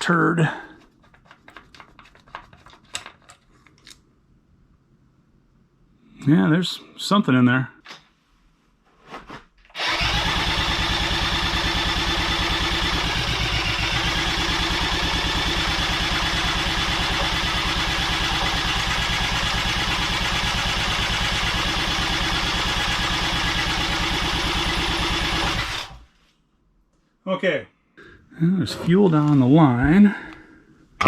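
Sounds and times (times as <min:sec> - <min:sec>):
single-cylinder engine running: 0:09.8 - 0:26.0.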